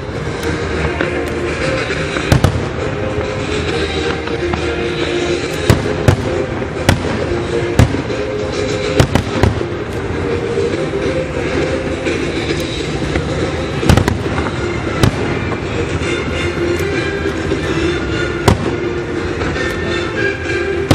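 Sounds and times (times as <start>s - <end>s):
fireworks crackling and rumbling: 0.0s - 20.9s
loud firework bangs: 1.9s - 9.9s, 13.2s - 16.4s, 17.3s - 19.6s.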